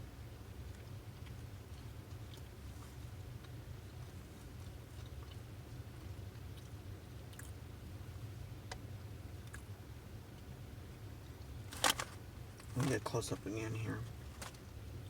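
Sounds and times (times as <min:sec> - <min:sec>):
steady low hum: 0:00.0 - 0:15.0
person chewing crispy food: 0:00.7 - 0:07.9.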